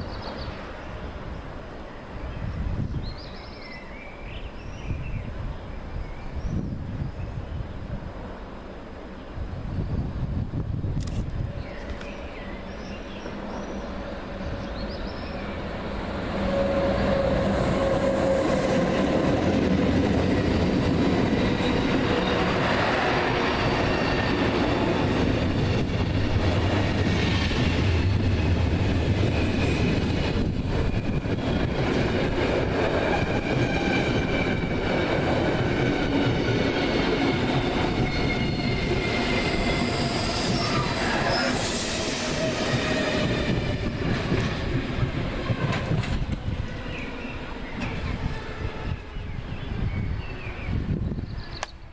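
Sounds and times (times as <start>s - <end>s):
train passing: 0.0s - 51.9s
wheels squealing on rails: 12.0s - 50.8s.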